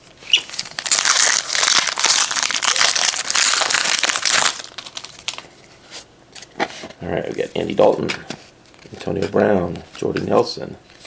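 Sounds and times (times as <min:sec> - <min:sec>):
wrapper crinkling as torn open: 0:00.3 - 0:05.5.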